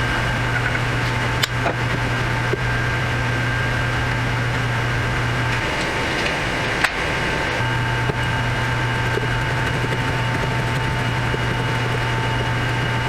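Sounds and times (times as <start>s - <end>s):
machine hum with whine: 5.5s - 9.2s.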